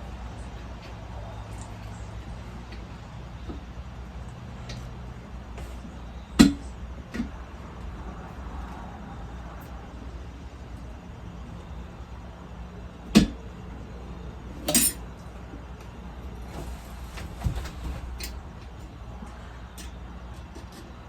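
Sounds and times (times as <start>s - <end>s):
metal tools knocking and clinking: 14.7s - 15.0s.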